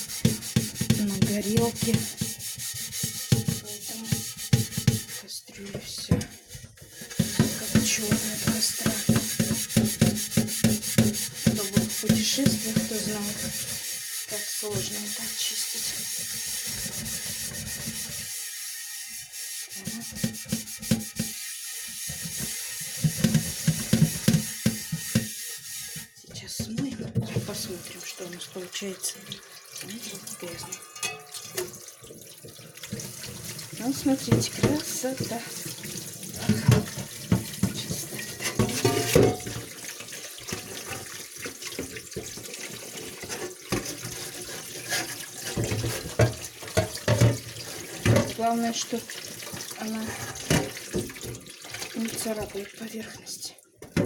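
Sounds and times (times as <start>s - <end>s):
pot knocking: 0.0s - 5.2s, 7.0s - 13.8s, 20.0s - 21.4s, 22.1s - 25.4s, 30.4s - 31.8s, 33.8s - 35.4s, 36.4s - 39.8s, 45.5s - 48.5s
metal pot being scrubbed: 0.0s - 54.0s
tap water running and splashing: 0.0s - 54.0s.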